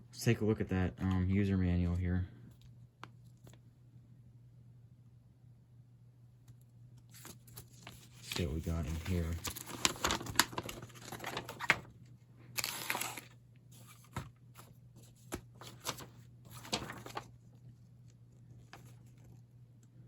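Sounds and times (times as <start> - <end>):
paper rustling: 7.1 - 19.4.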